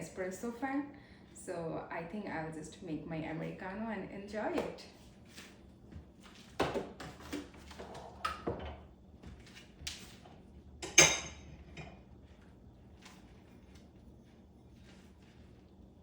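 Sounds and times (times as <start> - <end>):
cups and kitchenware clinking: 10.8 - 12.0.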